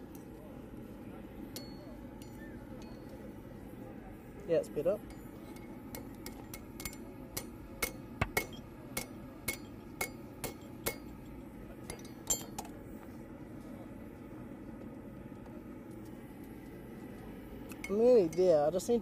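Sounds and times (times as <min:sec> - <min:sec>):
steady low hum: 0:00.0 - 0:19.0
hammer striking steel on anvil: 0:01.5 - 0:03.2, 0:05.0 - 0:12.7.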